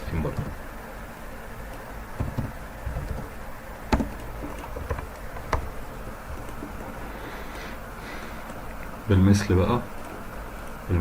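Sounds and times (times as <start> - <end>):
steady background hiss: 0.0 - 11.0
soft low thumps: 2.0 - 7.2.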